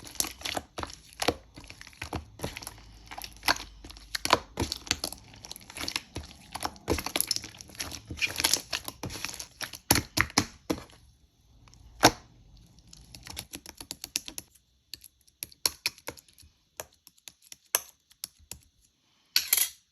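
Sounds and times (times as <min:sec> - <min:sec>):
slime squished by hand: 0:00.0 - 0:11.0.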